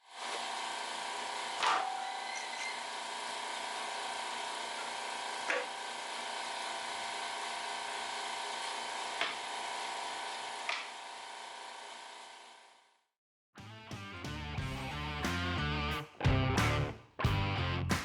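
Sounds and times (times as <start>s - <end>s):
table saw cutting wood: 0.0s - 12.7s.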